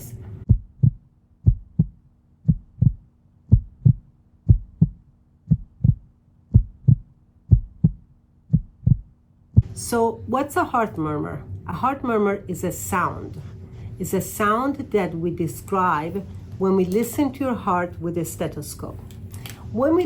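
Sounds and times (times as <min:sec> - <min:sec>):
lub-dub heartbeat: 0:00.4 - 0:09.8.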